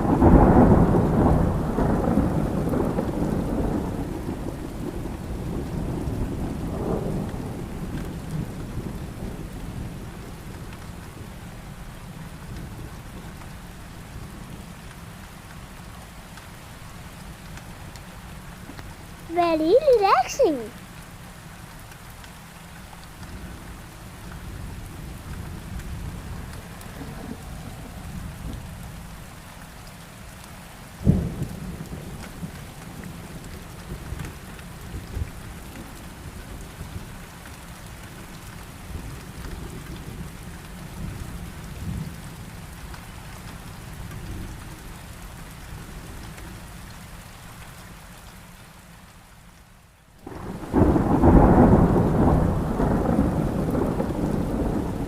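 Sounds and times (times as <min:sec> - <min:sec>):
sharp thunderclap: 0:00.0 - 0:09.5, 0:31.0 - 0:32.5, 0:50.2 - 0:55.0
low rolling thunder: 0:00.0 - 0:11.4, 0:23.3 - 0:29.3, 0:31.0 - 0:37.1, 0:50.2 - 0:55.0
steady rain: 0:00.0 - 0:55.0.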